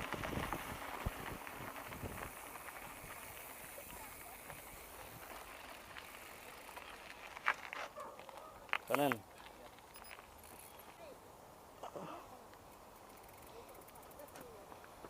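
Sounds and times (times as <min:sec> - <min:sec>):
bicycle wind and tyre rush: 0:00.0 - 0:11.8.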